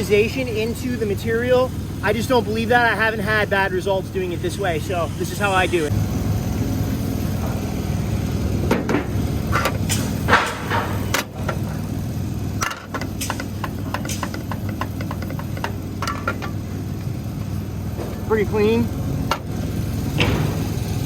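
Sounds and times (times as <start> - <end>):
welder-generator engine idling: 0.0 - 21.0
light clicks and knocks: 12.6 - 17.2.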